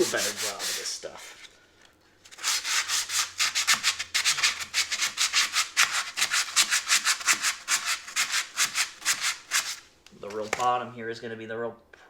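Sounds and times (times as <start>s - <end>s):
hand sanding with sandpaper: 0.0s - 1.4s, 2.3s - 9.8s.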